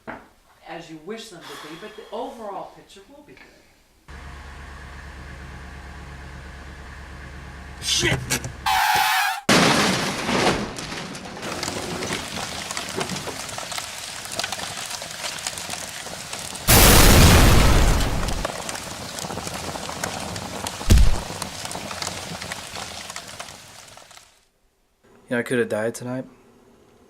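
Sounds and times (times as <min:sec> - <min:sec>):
car crash impact: 0:08.7 - 0:13.4, 0:16.7 - 0:18.5, 0:20.8 - 0:21.4
loud blast: 0:16.7 - 0:18.5, 0:20.9 - 0:21.3
heavy thump: 0:20.9 - 0:21.3.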